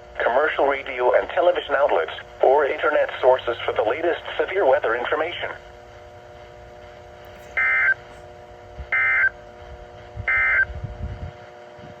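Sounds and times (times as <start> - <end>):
faint steady hum: 0.0 - 12.0
digital data tone bursts: 7.6 - 8.0, 8.9 - 9.3, 10.3 - 10.7.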